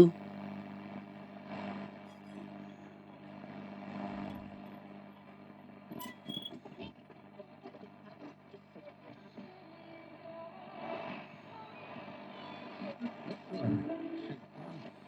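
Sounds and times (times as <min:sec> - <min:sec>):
brief radio whistles: 0:06.0 - 0:06.6.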